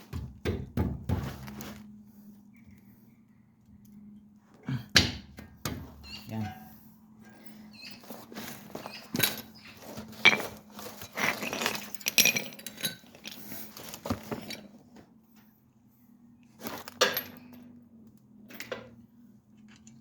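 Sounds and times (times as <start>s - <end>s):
metal brake parts clinking: 6.0s - 14.7s, 16.7s - 17.8s.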